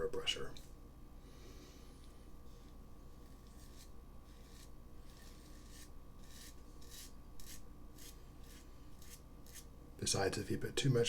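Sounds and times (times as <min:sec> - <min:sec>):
razor scraping stubble: 0:02.5 - 0:09.7.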